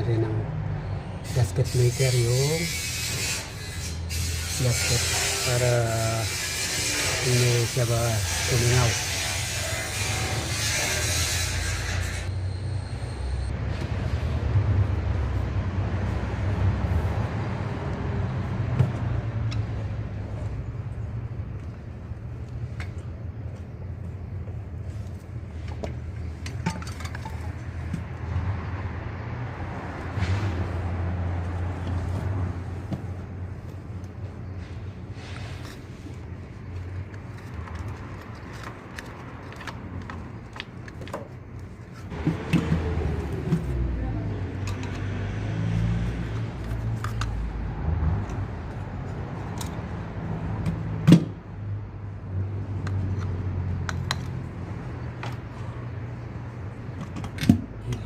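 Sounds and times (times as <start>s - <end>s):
tools clicking and tapping: 36.8s - 41.4s.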